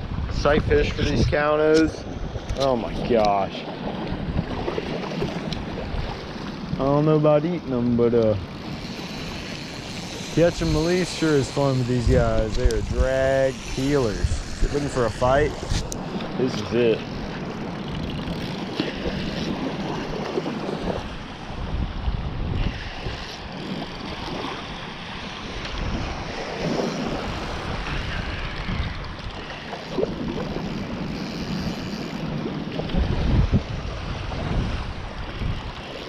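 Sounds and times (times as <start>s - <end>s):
waves washing: 0.0s - 36.0s
wind buffeting microphone: 0.0s - 36.0s.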